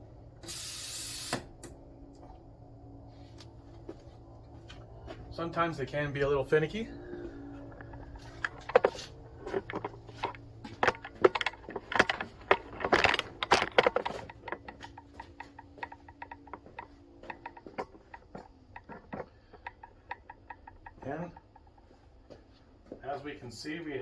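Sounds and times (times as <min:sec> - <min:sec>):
faint steady hum: 0:00.0 - 0:24.0
metal clicks and knocks: 0:07.7 - 0:21.9.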